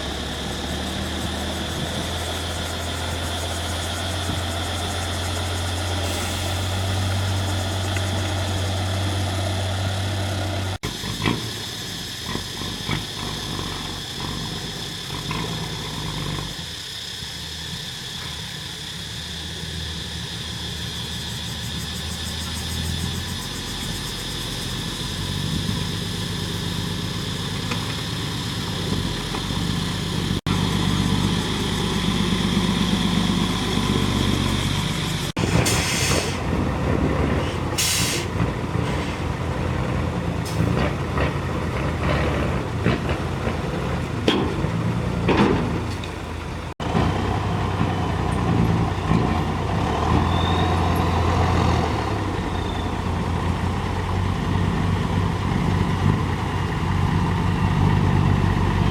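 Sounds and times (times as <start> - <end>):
diesel engines running: 0.0 - 58.9
air brake hiss: 5.8 - 8.4, 35.4 - 36.5, 37.4 - 39.2.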